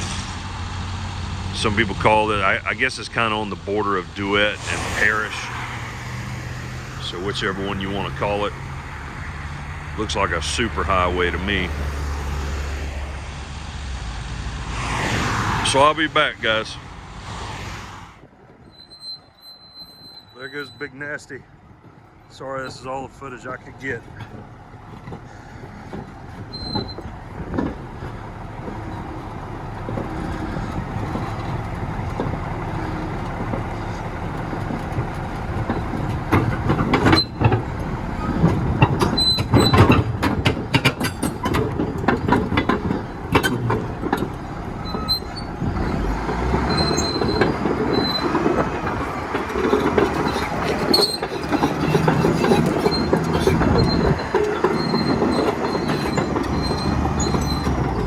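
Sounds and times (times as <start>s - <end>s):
train wheels squealing: 18.6s - 21.2s, 25.2s - 27.2s, 38.2s - 40.0s, 42.5s - 58.0s
train wheels clicking over rails: 21.2s - 58.0s.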